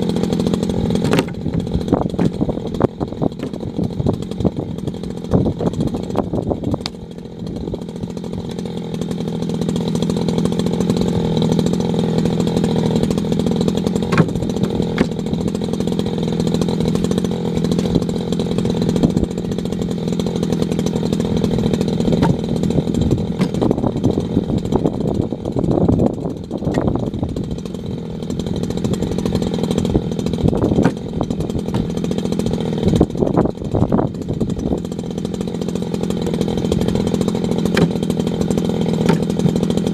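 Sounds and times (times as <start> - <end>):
chainsaw cutting wood: 0.0 - 39.9
wood knocks: 1.0 - 2.5, 3.3 - 3.6, 14.0 - 15.2, 22.2 - 22.5, 23.4 - 23.7, 37.7 - 38.0, 39.0 - 39.6.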